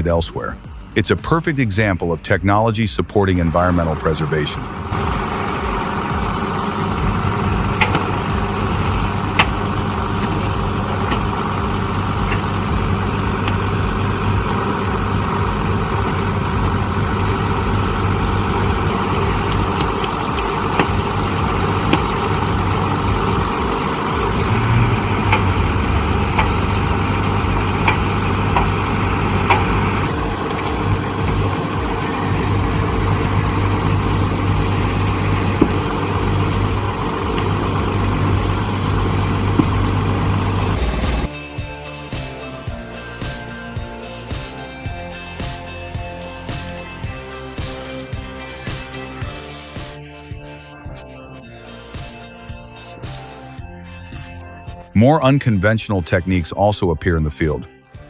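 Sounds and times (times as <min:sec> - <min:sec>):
heavy machine engine running: 0:03.2 - 0:41.3.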